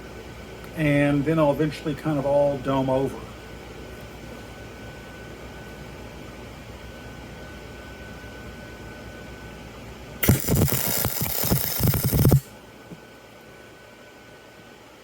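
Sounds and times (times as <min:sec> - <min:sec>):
welding arc crackling hiss: 0:10.2 - 0:12.5.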